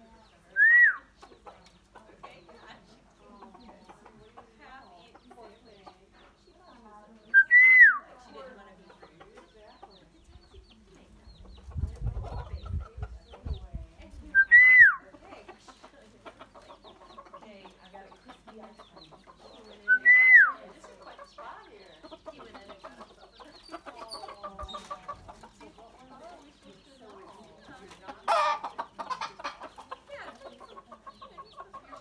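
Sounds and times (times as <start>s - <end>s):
soft bird chattering: 0.0s - 32.0s
bird whistled calls: 0.6s - 1.1s, 7.3s - 8.0s, 14.4s - 15.0s, 19.9s - 20.6s.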